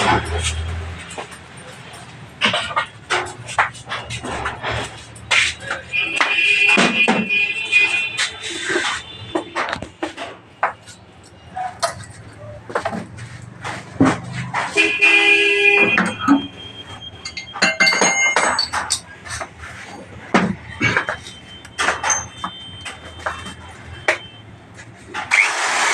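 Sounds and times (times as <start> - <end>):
vehicle horn: 5.9 - 9.7, 14.6 - 16.8
metallic clinks of hand tools: 17.2 - 19.2.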